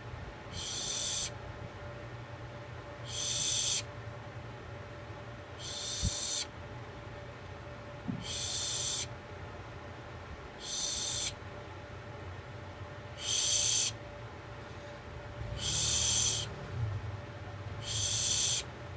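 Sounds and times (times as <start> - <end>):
owl screeching: 0.5 - 1.4, 3.0 - 3.9, 5.6 - 6.5, 8.2 - 9.1, 10.6 - 11.4, 13.2 - 14.0, 15.5 - 16.5, 17.8 - 18.7.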